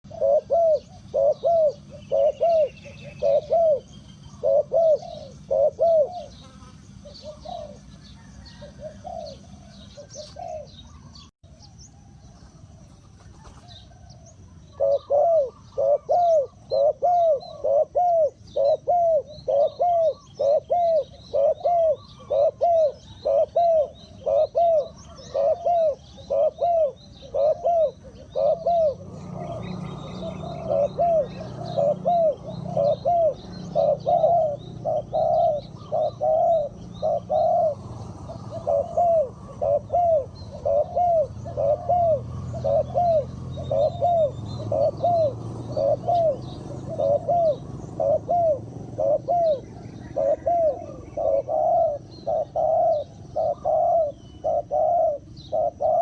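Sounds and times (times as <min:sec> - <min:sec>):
dove cooing: 0:00.0 - 0:56.0
small birds chirping: 0:00.0 - 0:56.0.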